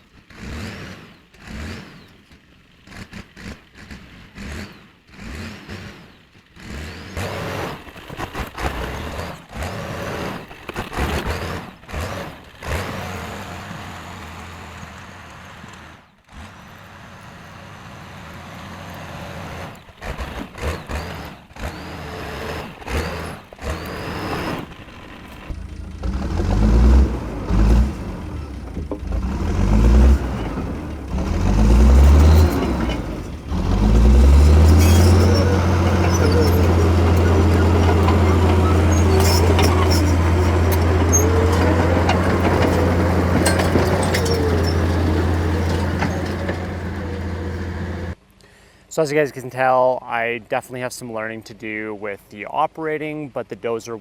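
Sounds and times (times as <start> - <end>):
bulldozer diesel engine running: 5.5 - 48.2.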